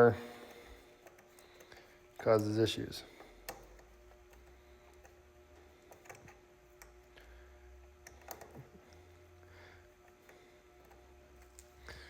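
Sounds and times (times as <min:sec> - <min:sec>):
small parts clicking: 0:00.0 - 0:07.2, 0:08.0 - 0:09.0
low steady hum: 0:00.0 - 0:12.0.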